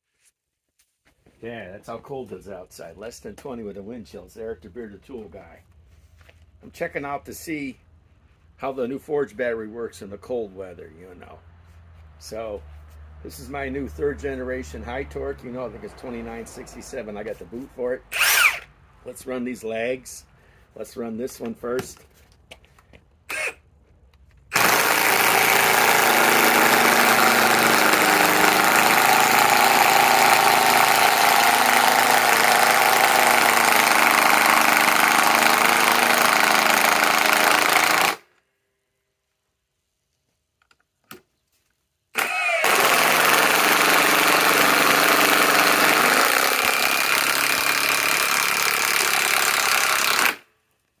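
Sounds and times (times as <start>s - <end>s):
impact wrench hammering screws: 24.5s - 38.2s, 42.2s - 50.4s.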